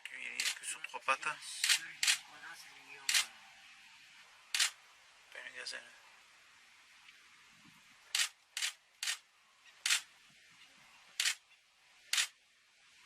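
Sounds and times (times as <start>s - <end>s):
camera shutter clicks: 0.4s - 0.6s, 1.6s - 2.2s, 3.1s - 3.3s, 4.6s - 4.8s, 8.2s - 9.2s, 9.8s - 10.1s, 11.2s - 11.4s, 12.1s - 12.3s.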